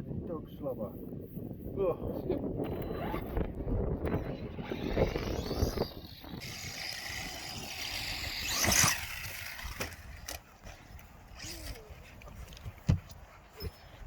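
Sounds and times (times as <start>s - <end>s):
rc truck motor whining: 2.6s - 10.6s, 11.2s - 12.0s
tyres on rough ground: 2.6s - 14.0s.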